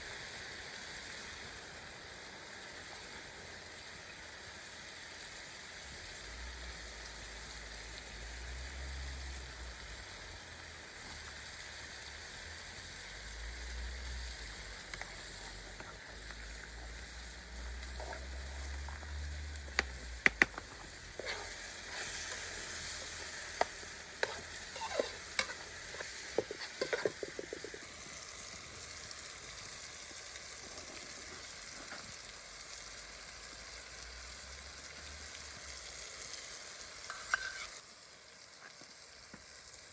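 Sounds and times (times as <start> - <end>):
food sizzling in a pan: 0.0 - 39.9
utensil knocking against pan: 19.7 - 20.8, 26.3 - 27.8.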